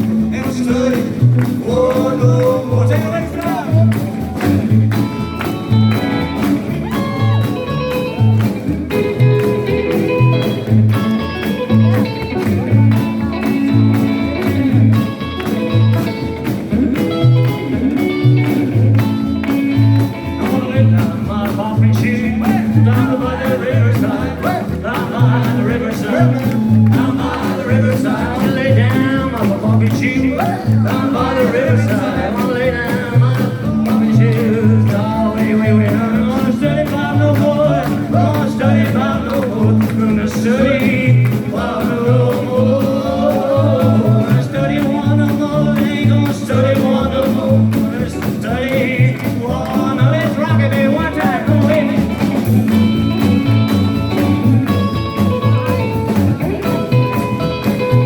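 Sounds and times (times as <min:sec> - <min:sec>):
rockabilly band playing: 0:00.0 - 0:58.0.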